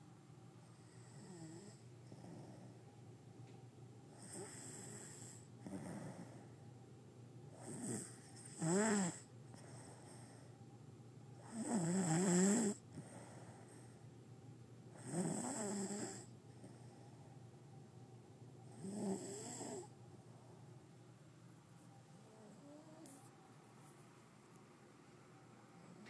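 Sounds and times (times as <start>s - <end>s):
man snoring: 1.0s - 2.7s, 4.2s - 6.4s, 7.6s - 9.3s, 11.4s - 12.8s, 15.0s - 16.3s, 18.8s - 19.9s.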